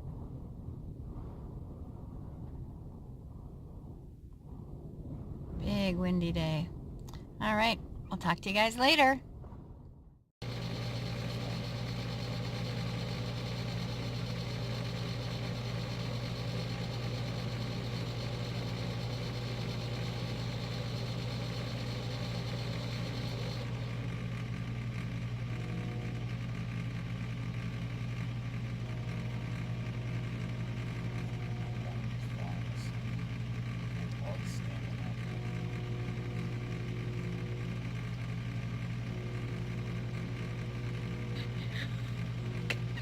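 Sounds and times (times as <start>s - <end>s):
vehicle engine idling: 10.4s - 43.0s.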